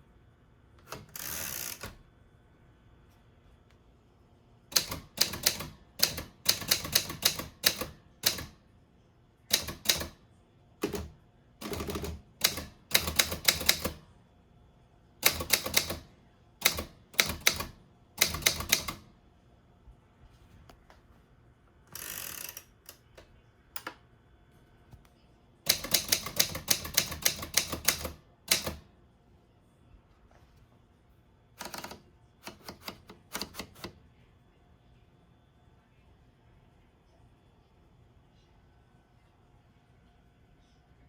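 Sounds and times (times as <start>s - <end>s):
manual typewriter typing: 0.8s - 2.0s, 4.7s - 8.6s, 9.5s - 10.2s, 10.8s - 14.0s, 15.2s - 19.1s, 25.7s - 28.8s, 31.6s - 34.0s.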